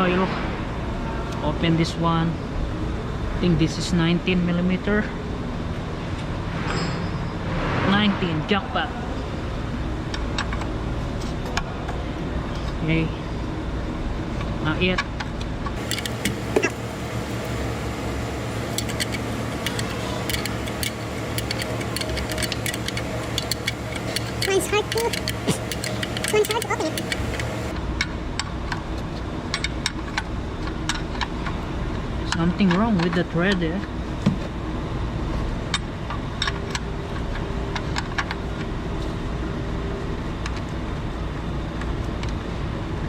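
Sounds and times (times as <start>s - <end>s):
low shop hum: 0.0s - 43.0s
wrench clicking on metal: 18.7s - 27.6s.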